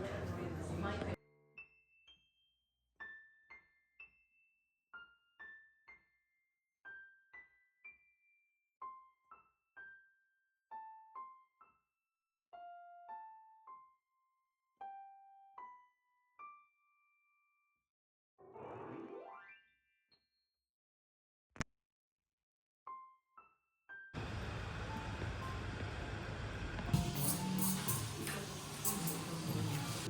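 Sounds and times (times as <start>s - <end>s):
soft electric piano melody: 10.7s - 11.8s, 12.6s - 14.1s.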